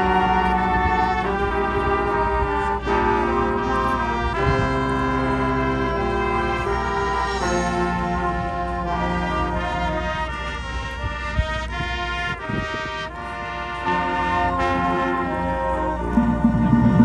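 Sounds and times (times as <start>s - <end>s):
marching band brass chords: 0.0s - 17.0s
sharp percussion hit: 16.0s - 17.0s.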